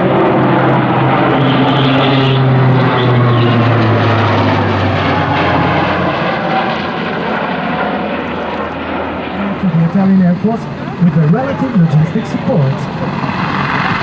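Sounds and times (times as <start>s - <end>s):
turboprop aircraft flying past: 0.0s - 14.0s.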